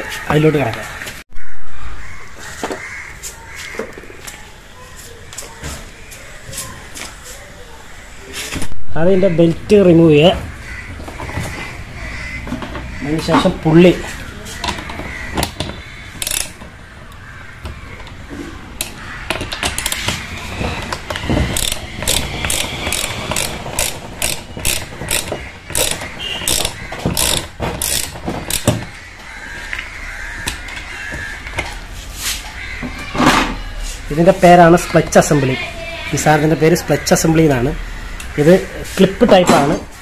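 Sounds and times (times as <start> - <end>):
metal clicks and knocks: 14.6 - 16.7, 18.8 - 29.0
ratchet wrench clicking: 16.2 - 16.6, 21.6 - 28.7.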